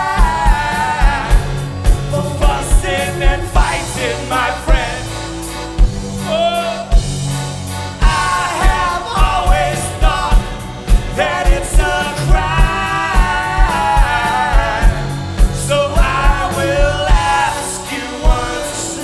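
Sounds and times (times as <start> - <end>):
kick drum beat: 0.0 - 4.0, 8.0 - 17.5
voices singing in harmony: 0.0 - 7.1, 7.7 - 19.0
band playing: 0.0 - 19.0
bass line: 0.0 - 19.0.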